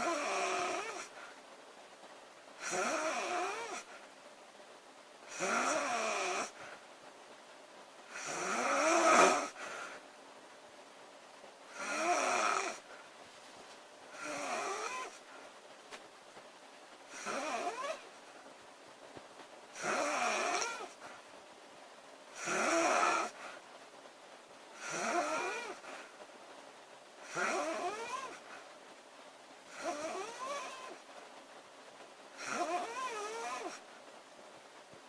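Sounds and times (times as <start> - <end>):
woman snoring loudly: 0.0 - 1.1, 2.6 - 3.9, 5.3 - 6.6, 8.1 - 9.6, 11.7 - 12.9, 14.1 - 15.2, 17.1 - 18.0, 19.8 - 21.0, 22.4 - 23.5, 24.8 - 25.9, 27.2 - 28.4, 29.7 - 31.0, 32.4 - 33.8.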